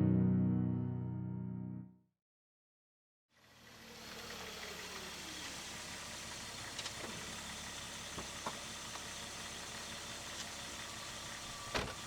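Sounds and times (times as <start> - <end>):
car engine: 3.4 - 12.0
road noise: 3.4 - 12.0.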